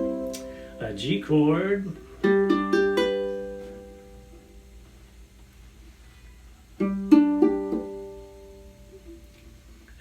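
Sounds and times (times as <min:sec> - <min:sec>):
ukulele chord strummed: 0:00.0 - 0:04.7, 0:06.8 - 0:09.5.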